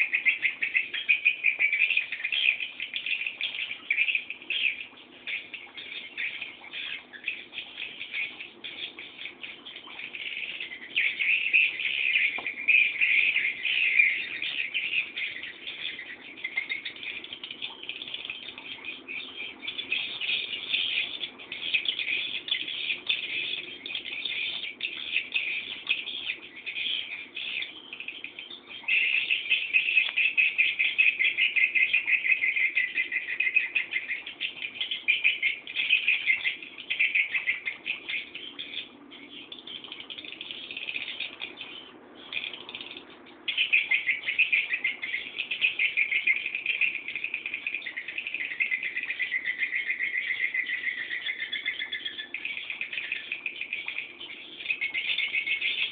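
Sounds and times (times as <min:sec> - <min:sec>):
chicks chirping: 0:00.0 - 0:55.9.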